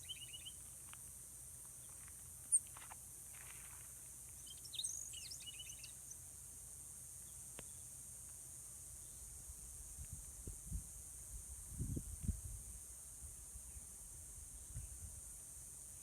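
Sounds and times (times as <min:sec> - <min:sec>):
birds chirping: 0:00.0 - 0:00.6.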